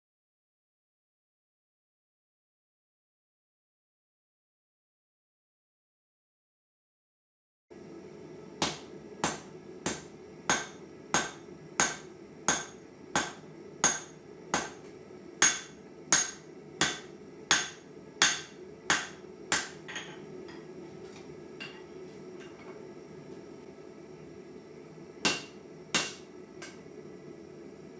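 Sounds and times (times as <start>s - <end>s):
hammer ringing on anvil: 15.4s - 20.2s, 25.3s - 26.8s.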